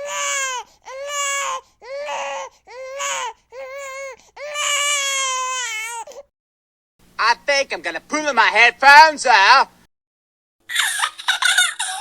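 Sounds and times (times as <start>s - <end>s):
baby crying: 0.0s - 6.3s, 10.7s - 12.0s.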